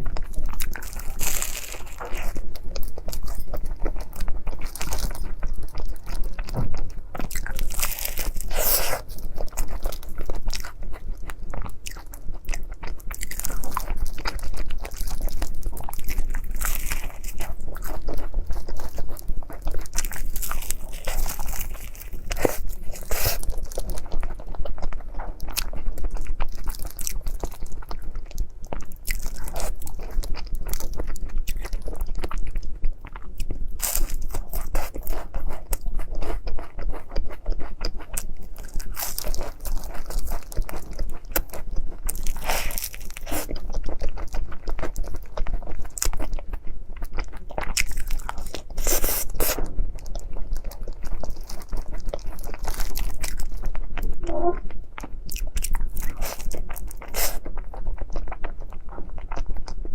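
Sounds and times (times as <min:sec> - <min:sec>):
crunching pastry bites: 0:00.0 - 0:03.5, 0:07.2 - 0:10.8, 0:11.8 - 0:24.1
chewing: 0:00.0 - 0:59.9.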